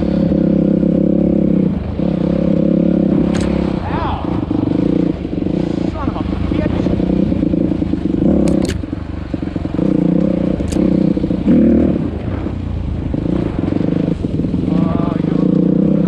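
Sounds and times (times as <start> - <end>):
small engine revving: 0.0 - 16.0
sharp clicks: 3.2 - 3.7, 8.4 - 8.9, 10.6 - 10.9.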